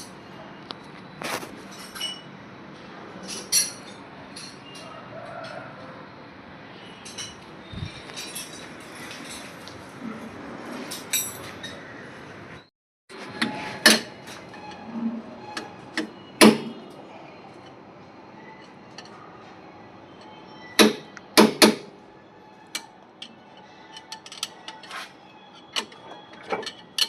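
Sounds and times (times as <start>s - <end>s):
metal tools clinking on metal: 1.6s - 2.3s, 3.2s - 5.6s, 7.0s - 9.6s, 10.9s - 11.8s, 22.6s - 27.0s.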